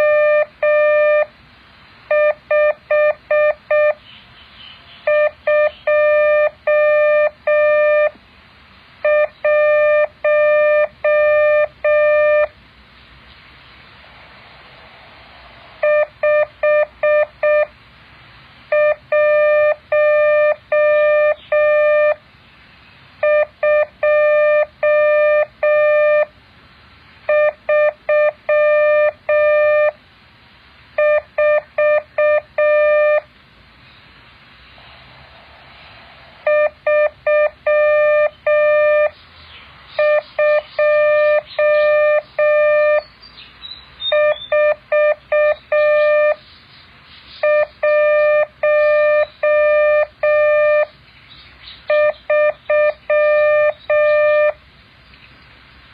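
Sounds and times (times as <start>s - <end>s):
morse code beeps: 0.0s - 1.3s, 2.1s - 4.0s, 5.0s - 8.2s, 9.0s - 12.5s, 15.8s - 17.7s, 18.7s - 22.2s, 23.2s - 26.3s, 27.3s - 30.0s, 31.0s - 33.3s, 36.4s - 39.1s, 40.0s - 43.0s, 44.1s - 46.4s, 47.4s - 50.9s, 51.9s - 54.6s
faint hiss: 0.0s - 44.1s, 46.4s - 48.6s, 54.5s - 55.9s.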